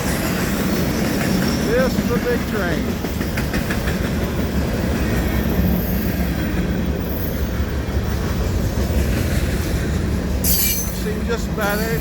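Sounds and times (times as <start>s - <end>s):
train wheels rumbling on rail: 0.0s - 12.0s
high wheel squeals: 10.4s - 12.0s.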